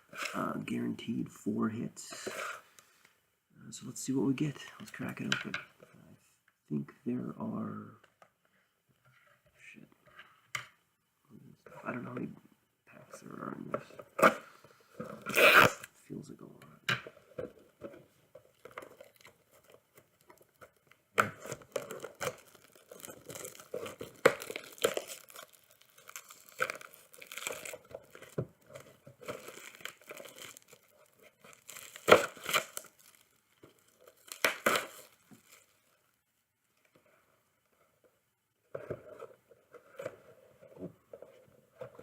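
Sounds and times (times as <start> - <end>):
wrappers tearing: 15.3 - 15.8, 21.5 - 28.3, 29.2 - 35.9
card wrappers crinkling: 18.4 - 36.0.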